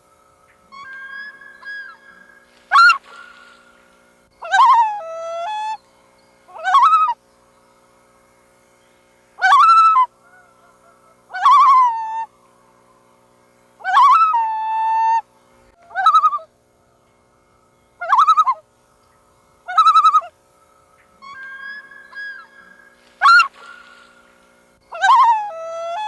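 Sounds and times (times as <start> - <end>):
loons calling: 0.0 - 26.0.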